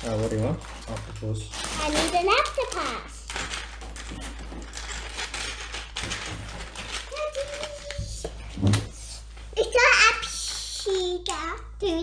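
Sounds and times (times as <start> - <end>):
plastic bricks rattling and clicking: 0.0 - 8.8.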